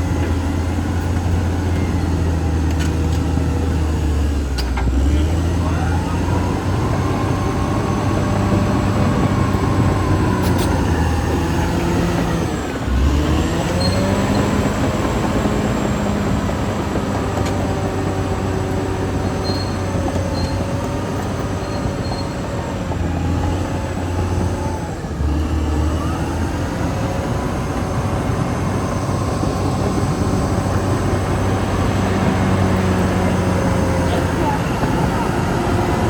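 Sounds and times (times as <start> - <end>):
bulldozer diesel engine: 0.0 - 36.0
steel tracks squealing and clattering: 9.5 - 27.9.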